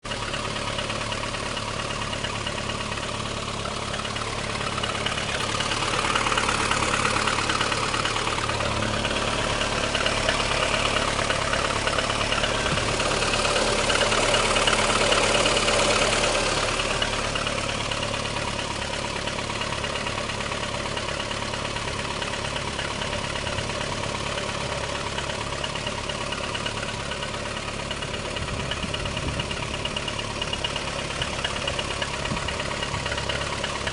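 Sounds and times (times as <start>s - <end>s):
car engine idling with knocking: 0.0s - 33.9s.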